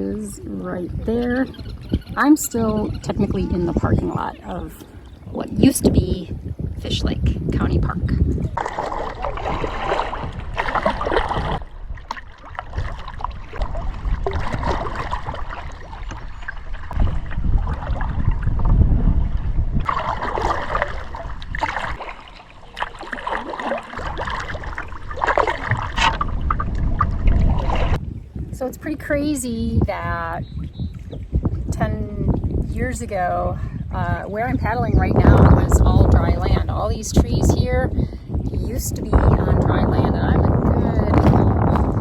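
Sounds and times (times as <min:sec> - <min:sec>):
low uneven rumble: 0:00.0 - 0:42.0
paddle splashing in water: 0:08.2 - 0:28.6.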